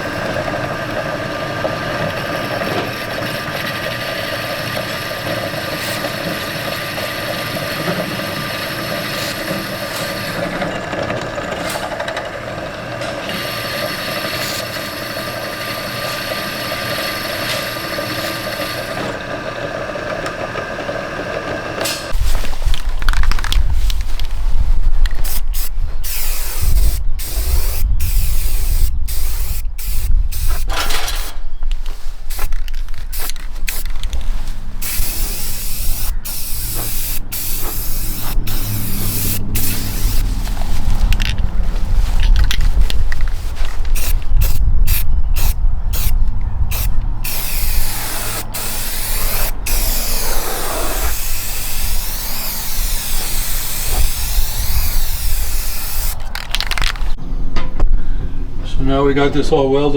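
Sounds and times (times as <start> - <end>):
welding arc crackling: 32.3 - 44.6, 46.8 - 57.2.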